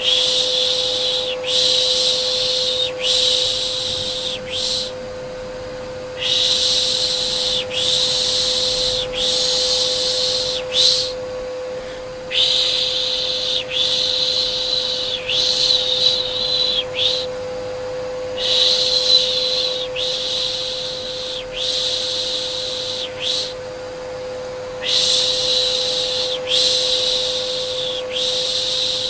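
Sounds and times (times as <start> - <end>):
person shushing: 0.0 - 5.0, 6.2 - 17.3
vacuum cleaner humming: 0.0 - 29.0.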